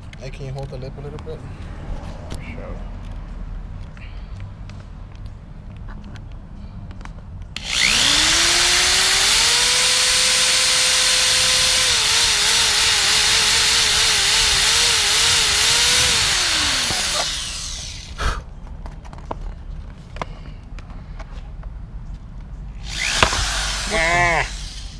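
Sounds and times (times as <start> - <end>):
power drill drilling: 7.6 - 18.2, 22.8 - 24.9.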